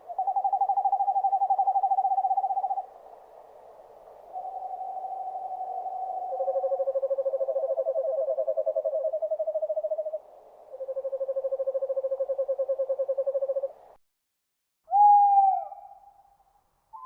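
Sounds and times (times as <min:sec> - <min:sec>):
owl trilling: 0:00.0 - 0:02.9, 0:04.3 - 0:13.7, 0:14.9 - 0:16.2.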